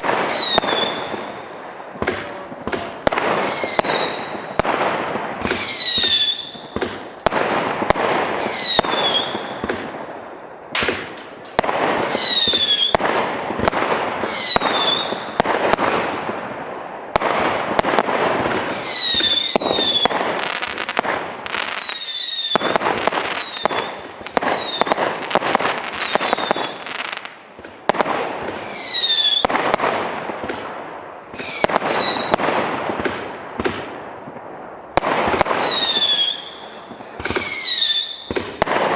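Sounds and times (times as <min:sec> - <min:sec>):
firework cake firing shots: 0:00.0 - 0:16.4, 0:17.0 - 0:38.9
firework whistle falling in pitch: 0:05.4 - 0:06.8.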